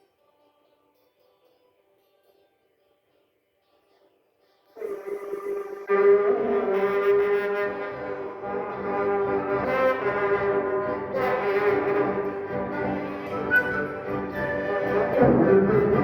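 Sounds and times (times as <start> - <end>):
orchestra holding sustained chords: 7.9 - 16.0.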